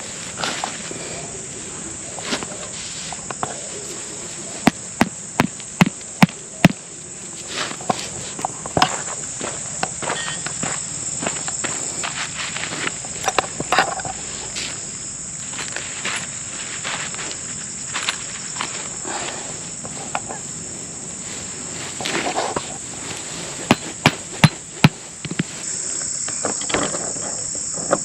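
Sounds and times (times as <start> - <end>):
insects droning: 0.0 - 28.0.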